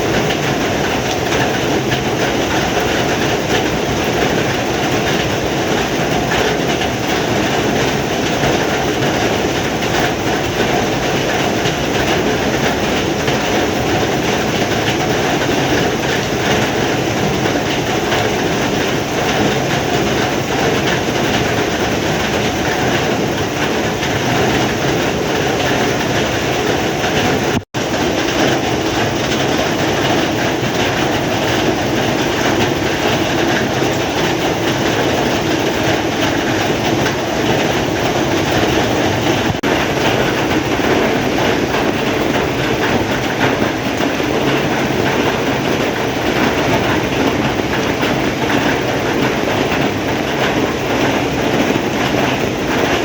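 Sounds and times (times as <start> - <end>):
heavy rain falling: 0.0 - 53.0.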